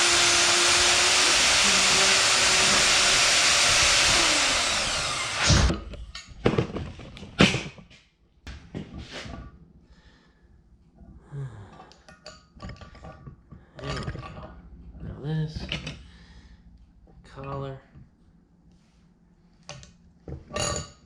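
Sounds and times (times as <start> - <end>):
power tool grinding metal: 0.0 - 5.7.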